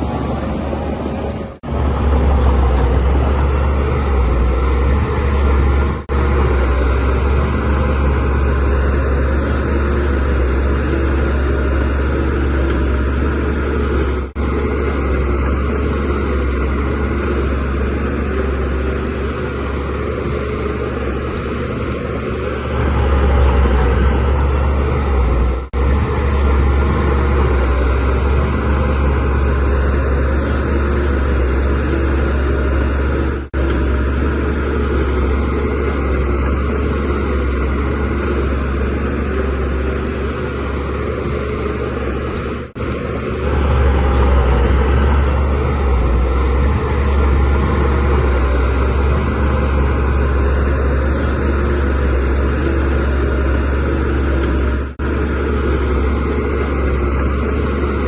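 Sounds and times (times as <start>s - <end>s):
bulldozer diesel engine running: 0.0s - 58.0s.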